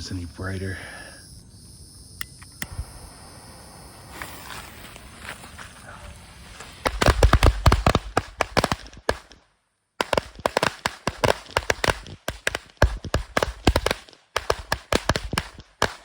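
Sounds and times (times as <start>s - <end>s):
firecrackers banging: 4.0s - 9.4s, 10.0s - 16.0s.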